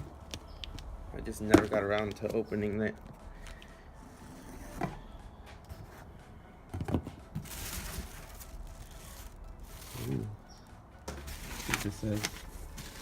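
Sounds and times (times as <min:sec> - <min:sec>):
packing rustle: 0:07.4 - 0:10.4, 0:11.2 - 0:13.0.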